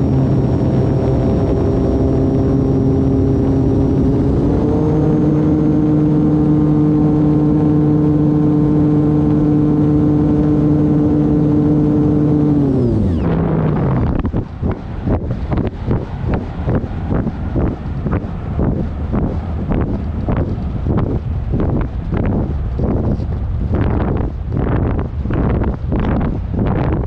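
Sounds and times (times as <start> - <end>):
rc plane motor whine: 2.0 - 14.8.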